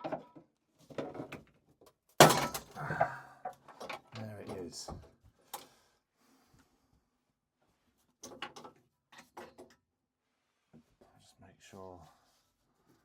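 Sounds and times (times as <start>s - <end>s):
plastic parts clicking and knocking: 8.2s - 9.8s.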